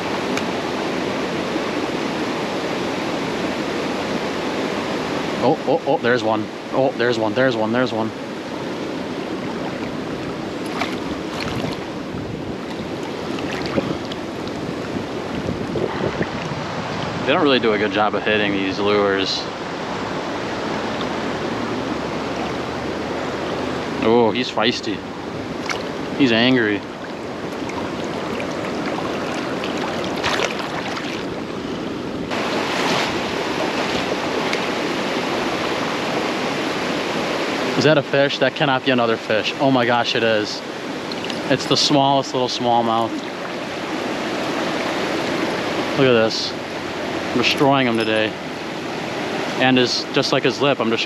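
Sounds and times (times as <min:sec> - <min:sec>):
river water rushing: 0:00.0 - 0:51.0
wind buffeting microphone: 0:07.3 - 0:37.8.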